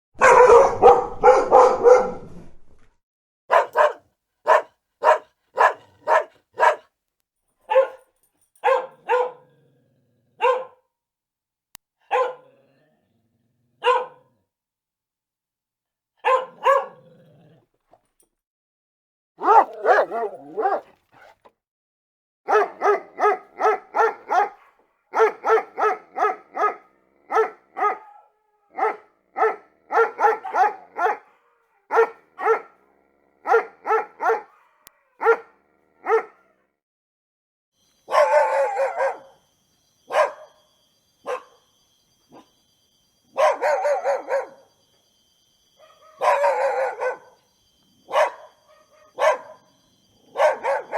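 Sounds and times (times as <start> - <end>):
dog barking: 0.2 - 2.3, 3.5 - 6.9, 7.7 - 9.6, 10.4 - 10.9, 12.0 - 12.6, 13.8 - 14.4, 16.2 - 17.3, 19.4 - 21.6, 22.5 - 32.8, 33.4 - 36.6, 38.1 - 39.4, 40.1 - 40.6, 41.2 - 41.6, 42.3 - 42.6, 43.3 - 44.7, 45.8 - 47.4, 48.1 - 50.9.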